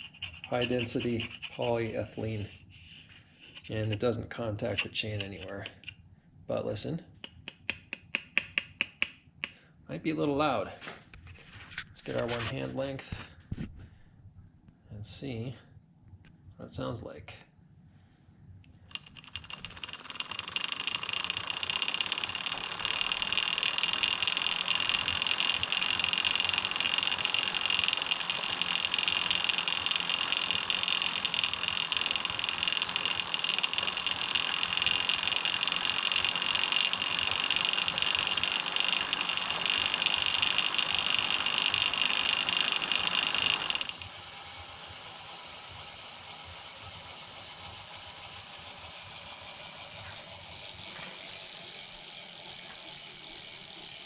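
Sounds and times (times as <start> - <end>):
bicycle chain whirring: 0.0 - 2.4, 18.9 - 54.0.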